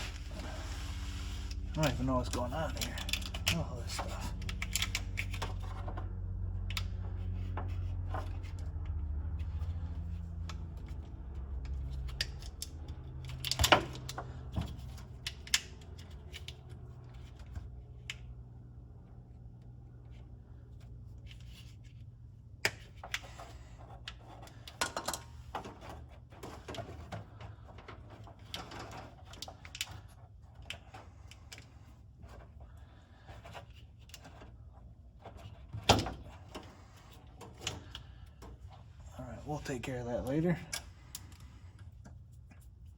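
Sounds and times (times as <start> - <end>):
rattling car parts being handled: 0.0 - 17.9, 21.0 - 42.9
steady low hum: 0.0 - 42.9.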